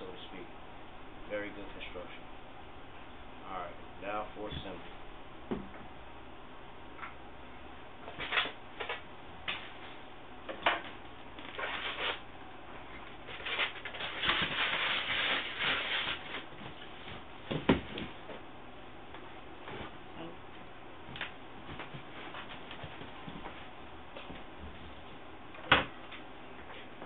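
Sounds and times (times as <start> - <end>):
rubbing and rustling: 11.4 - 18.4.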